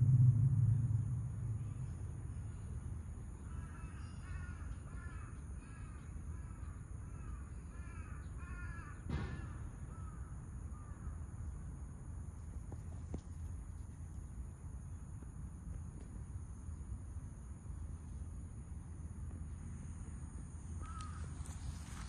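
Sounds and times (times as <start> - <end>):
low rumble: 0.0 - 4.1
crow cawing: 3.4 - 11.1, 20.8 - 22.0
sharp knock: 9.1 - 9.6.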